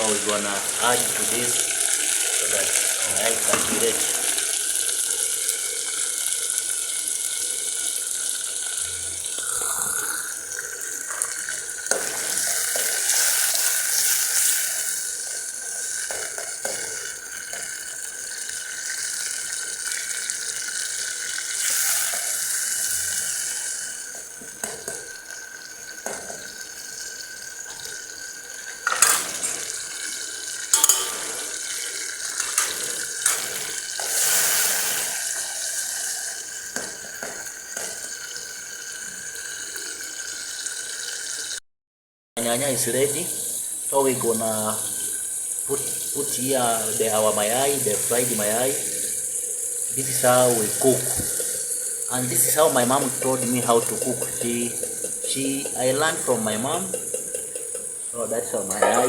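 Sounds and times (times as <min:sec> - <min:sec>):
tomatoes sizzling in a pan: 0:00.0 - 0:41.6, 0:42.4 - 0:59.0
spoon knocking against pan: 0:30.7 - 0:31.6, 0:58.7 - 0:59.0.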